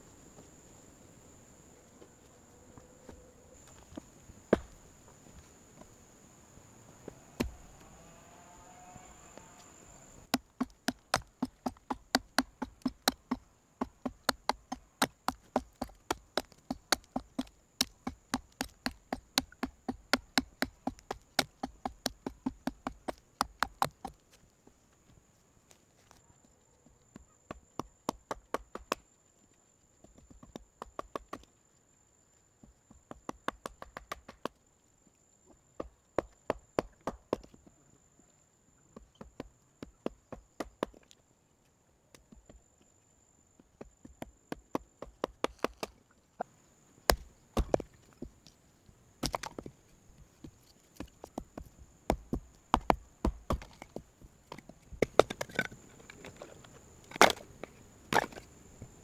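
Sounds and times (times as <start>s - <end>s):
high insect drone: 0.0s - 13.4s
hand tool knocking on wood: 10.3s - 24.2s, 51.2s - 54.0s.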